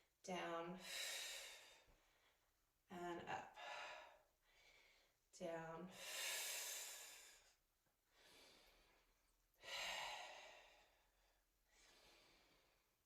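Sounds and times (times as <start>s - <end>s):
person breathing heavily: 8.1s - 11.1s, 11.7s - 12.9s.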